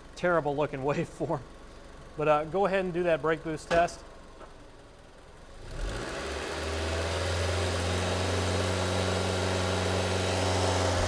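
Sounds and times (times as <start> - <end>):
car engine droning under load: 0.0 - 11.0.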